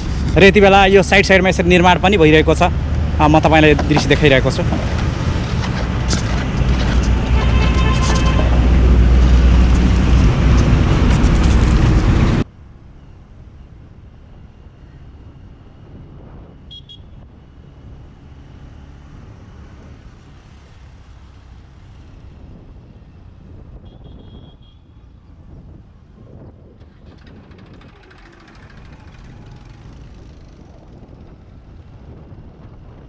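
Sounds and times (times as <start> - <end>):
distant traffic: 0.0 - 25.5, 26.8 - 33.0
loud road traffic rumble: 0.0 - 33.0.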